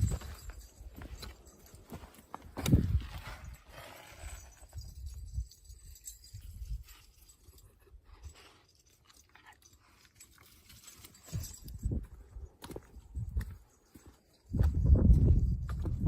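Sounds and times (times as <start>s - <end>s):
footsteps on dirt trail: 0.0s - 4.5s, 11.2s - 16.0s.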